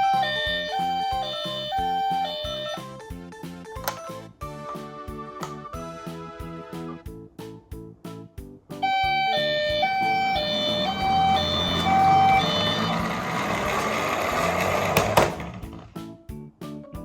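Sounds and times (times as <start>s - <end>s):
toy two-tone siren: 0.0s - 3.0s, 8.8s - 15.4s
toy cars rolling down track: 8.9s - 16.0s.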